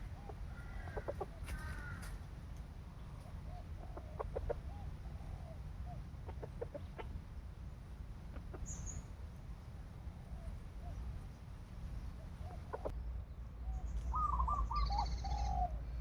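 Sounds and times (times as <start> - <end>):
chicken clucking: 0.0 - 2.1, 3.2 - 5.6, 6.2 - 7.4, 8.2 - 9.2, 12.3 - 12.9.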